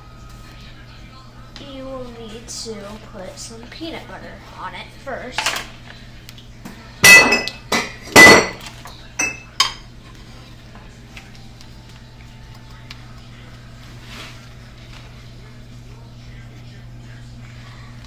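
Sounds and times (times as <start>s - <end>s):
dishes and utensils clattering: 5.3s - 5.8s, 6.6s - 9.9s.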